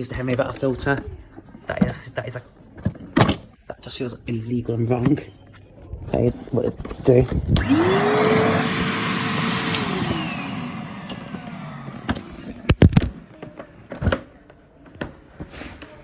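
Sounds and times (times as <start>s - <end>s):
vacuum cleaner motor whining: 7.6s - 13.2s.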